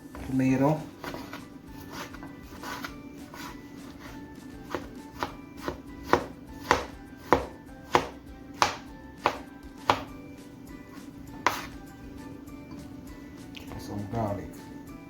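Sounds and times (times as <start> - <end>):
knife chopping vegetables: 0.1 - 10.2, 11.3 - 11.9.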